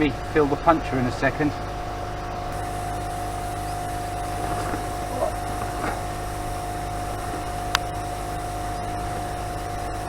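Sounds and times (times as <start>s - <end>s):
air compressor humming: 1.6s - 10.0s
air inflating tyre: 2.5s - 10.0s.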